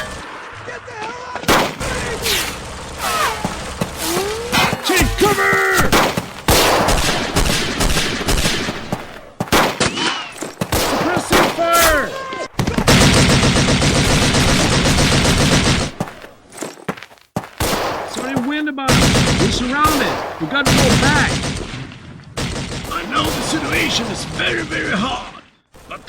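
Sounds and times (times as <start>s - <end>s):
rifle and machine-gun shots: 1.4s - 16.3s, 17.6s - 25.0s
long machine-gun burst: 1.7s - 8.8s, 12.8s - 16.0s
brief shouts: 2.2s - 6.0s.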